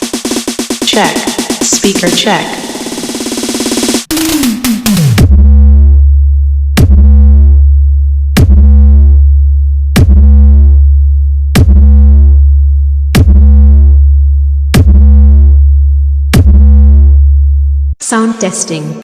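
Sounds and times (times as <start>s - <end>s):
deep sub-bass tone: 5.0s - 18.0s.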